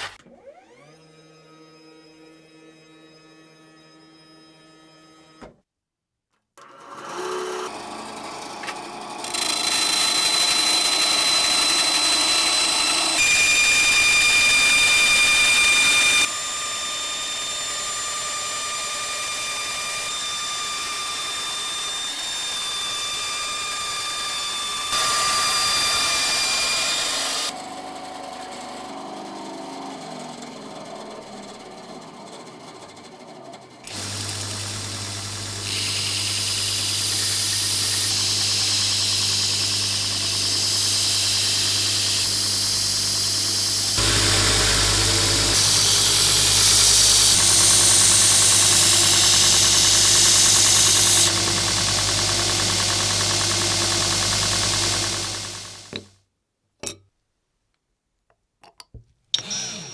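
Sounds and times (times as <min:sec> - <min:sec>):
small power tool whirring: 0:06.6 - 0:27.8, 0:33.8 - 0:56.1, 0:59.4 - 0:59.9.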